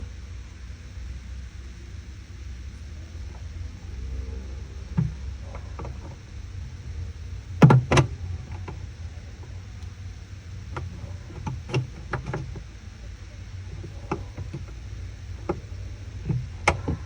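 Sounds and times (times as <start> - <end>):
knocks on washing machine pulsator: 7.6 - 8.2.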